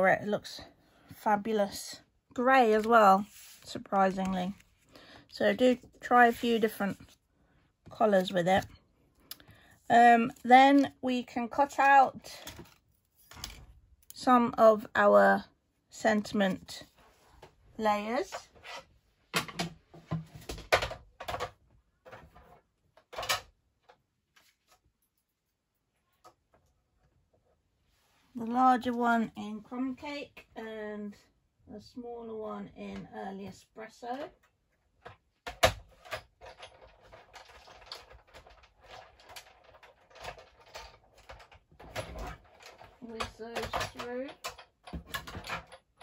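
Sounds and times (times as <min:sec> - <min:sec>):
cardstock rustling: 0:02.4 - 0:07.2.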